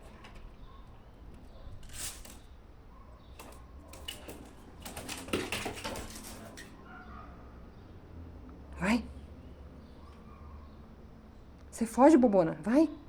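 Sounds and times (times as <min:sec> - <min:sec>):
pet claws scrabbling: 0:03.4 - 0:06.8.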